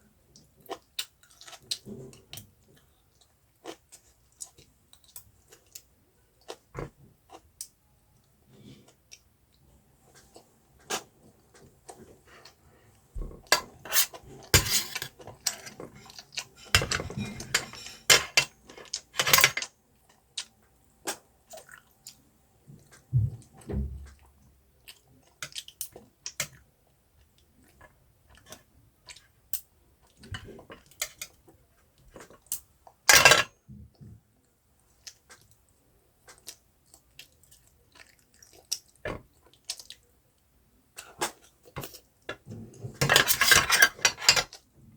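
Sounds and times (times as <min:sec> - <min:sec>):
cutlery scraping a dish: 0:13.5 - 0:19.7, 0:33.1 - 0:33.5, 0:41.1 - 0:44.5.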